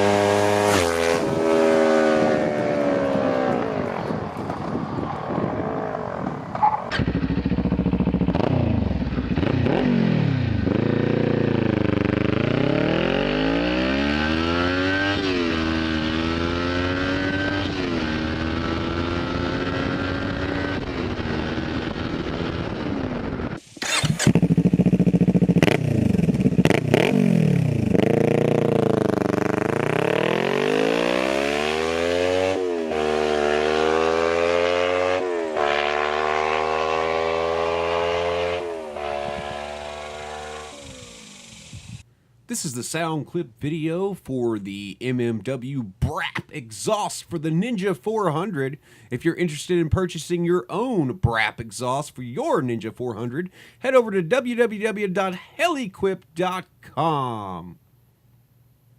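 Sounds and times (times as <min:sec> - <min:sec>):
motorcycle engine revving: 0:00.0 - 0:42.1
exhaust cracks: 0:00.2 - 0:12.8, 0:17.6 - 0:30.7, 0:38.8 - 0:42.0.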